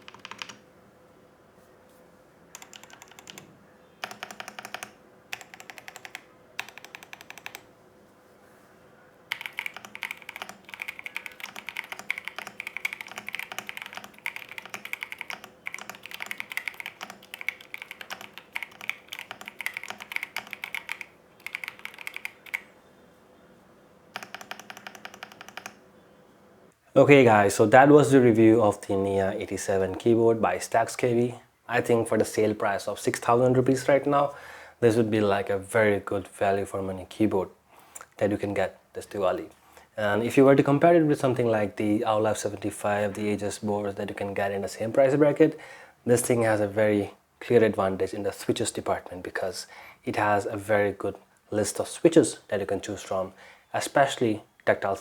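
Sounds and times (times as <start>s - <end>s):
mechanical keyboard typing: 0.0s - 0.6s, 2.6s - 7.7s, 9.3s - 22.7s, 24.2s - 25.8s
faint steady hum: 0.0s - 55.0s.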